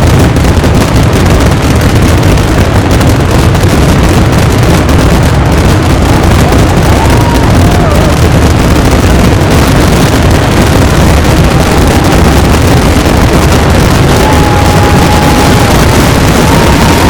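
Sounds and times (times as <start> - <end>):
fireworks bursting rumble: 0.0 - 17.0.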